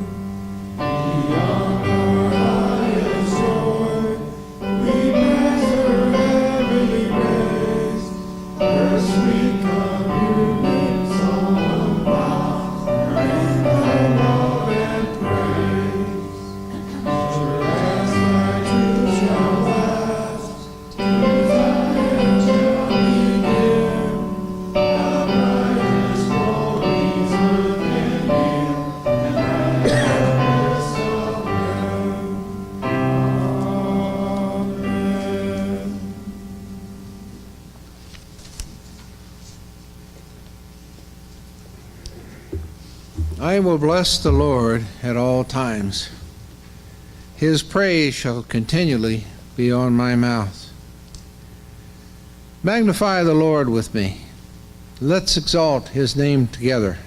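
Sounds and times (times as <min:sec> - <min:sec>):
piano accompaniment: 0:00.0 - 0:37.6, 0:42.6 - 0:45.6
congregation singing a hymn: 0:00.0 - 0:37.7, 0:42.3 - 0:46.6.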